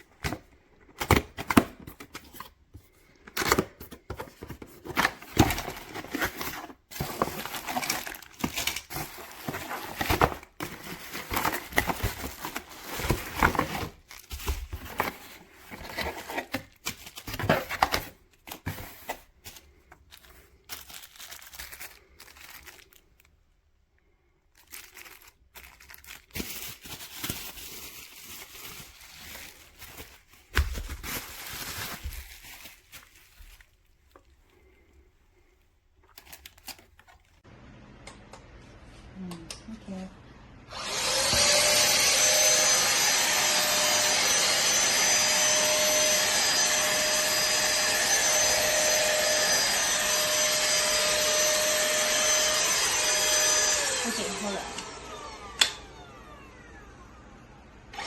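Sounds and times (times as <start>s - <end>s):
crinkling and rustling handling noise: 0.0s - 37.4s.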